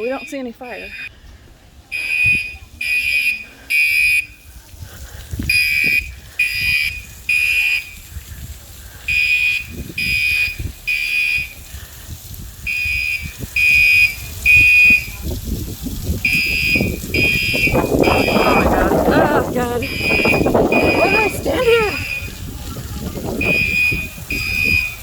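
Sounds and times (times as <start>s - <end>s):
fire alarm beeps: 0.0s - 1.1s, 2.0s - 4.4s, 5.5s - 7.9s, 9.1s - 11.6s, 12.7s - 15.2s, 16.3s - 22.3s, 23.4s - 25.0s.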